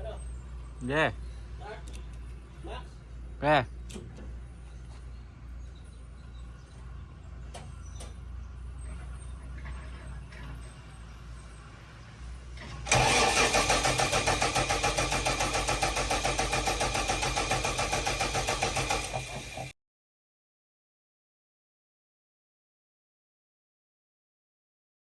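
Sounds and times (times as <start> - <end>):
starter cranking diesel engine: 3.8 - 5.0, 12.6 - 19.8.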